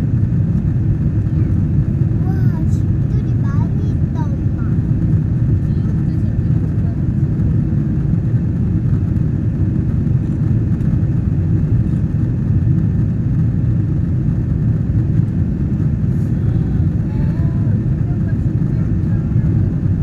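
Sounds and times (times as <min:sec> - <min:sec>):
jet engine rumble in cabin: 0:00.0 - 0:20.0.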